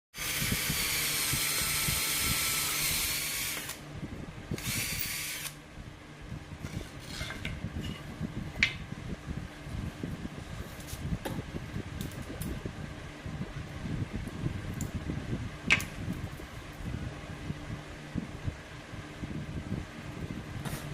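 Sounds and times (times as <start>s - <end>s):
handheld power tool running: 0.1s - 3.8s, 4.6s - 5.6s.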